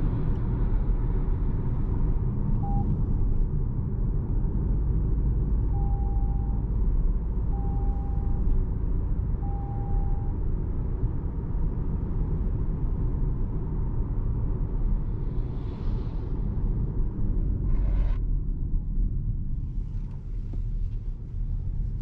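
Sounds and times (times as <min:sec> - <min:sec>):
car cabin road rumble: 0:00.0 - 0:22.0
short steady tone: 0:02.6 - 0:02.9, 0:05.7 - 0:06.6, 0:07.5 - 0:08.5, 0:09.4 - 0:10.4.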